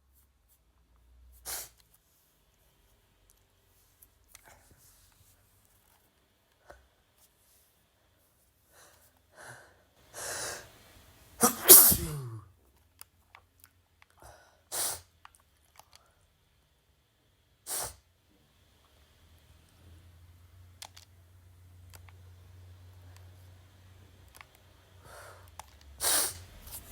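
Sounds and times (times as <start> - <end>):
sharp breaths: 9.4 - 12.4
person sneezing: 11.4 - 12.5.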